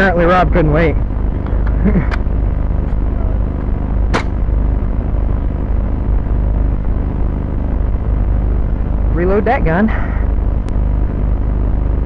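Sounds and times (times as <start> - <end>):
low rumble on microphone: 0.0 - 12.0
sharp crack: 3.6 - 4.6.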